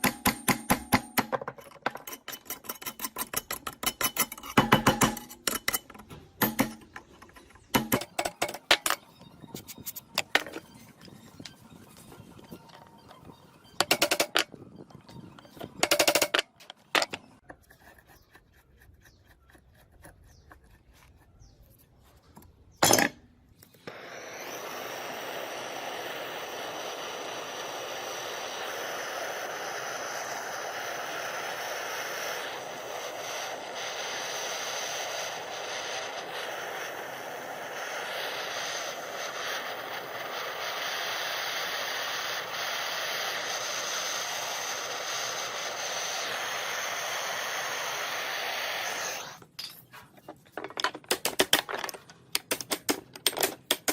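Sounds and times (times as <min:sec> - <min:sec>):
metallic clanks: 0:00.0 - 0:09.1.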